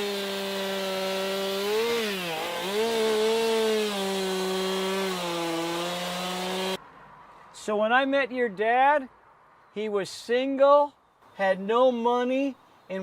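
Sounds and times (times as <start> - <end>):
chainsaw cutting wood: 0.0 - 6.8.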